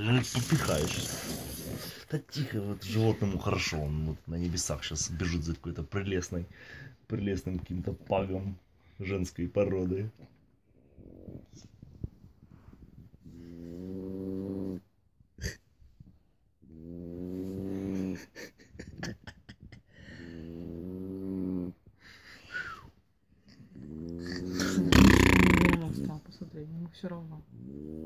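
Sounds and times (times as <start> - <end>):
low snores: 0.8 - 2.1, 13.2 - 14.9, 16.6 - 18.3, 20.1 - 21.8, 23.6 - 26.1.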